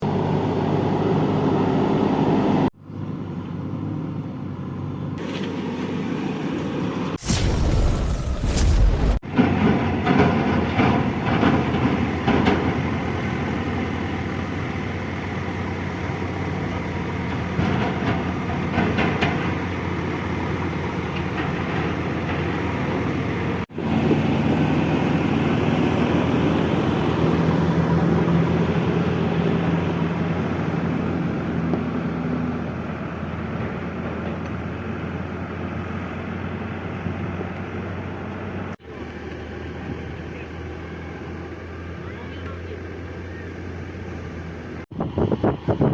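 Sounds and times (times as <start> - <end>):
diesel backhoe engine under load: 0.0 - 7.4, 9.2 - 45.9.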